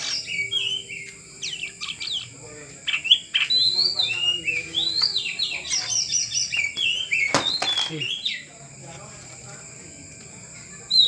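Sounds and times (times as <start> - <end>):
bird singing whistled phrases: 0.0 - 2.3, 2.9 - 8.5.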